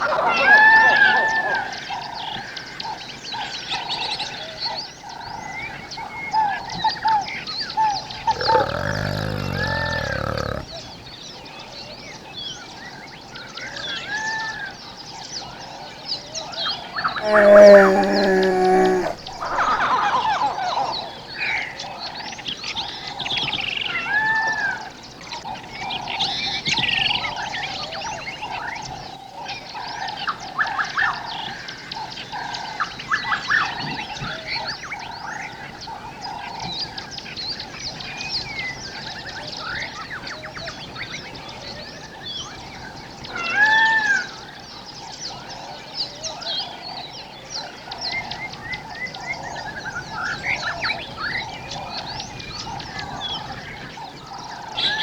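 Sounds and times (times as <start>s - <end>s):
birds calling: 8.3s - 10.7s, 17.2s - 19.8s.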